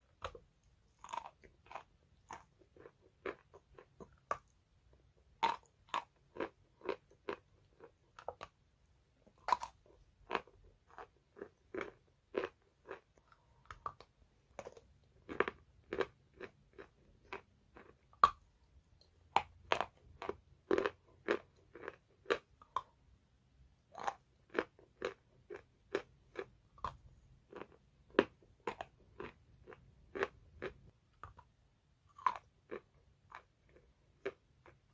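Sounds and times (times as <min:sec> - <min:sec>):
chalk crunching while chewed: 0:00.1 - 0:08.6, 0:09.3 - 0:18.5, 0:19.4 - 0:22.9, 0:32.1 - 0:34.9.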